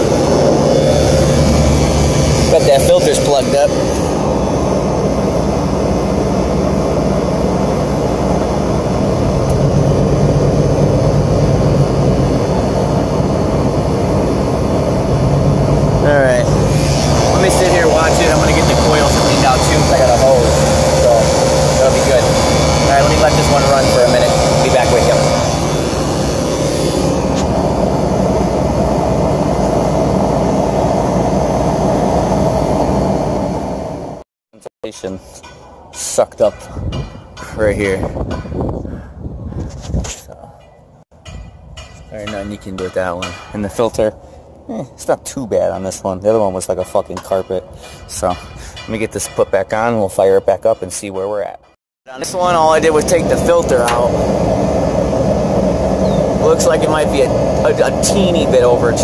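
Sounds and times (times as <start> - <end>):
air conditioner humming: 0.0 - 33.6, 52.1 - 59.0.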